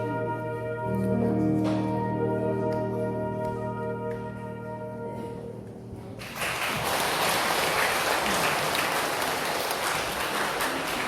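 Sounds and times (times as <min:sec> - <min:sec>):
flute quartet chord: 0:00.0 - 0:05.9
audience applause: 0:06.2 - 0:11.0.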